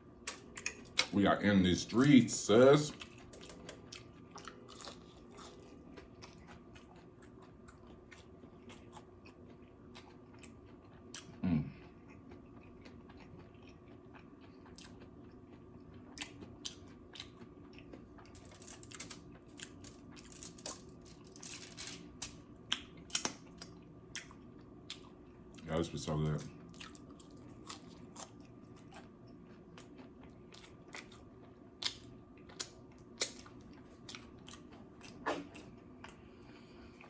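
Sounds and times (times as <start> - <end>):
person chewing food: 0.2 - 1.2, 1.9 - 25.7, 26.4 - 37.0.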